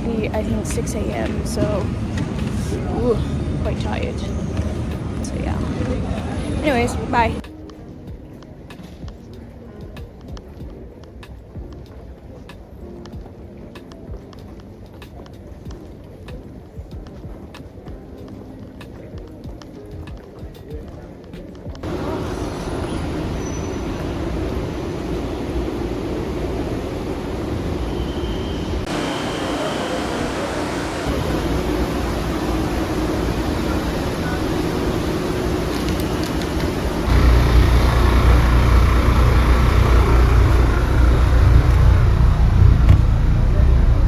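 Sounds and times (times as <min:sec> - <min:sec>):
engine and road rumble: 0:00.0 - 0:07.4, 0:21.8 - 0:44.0.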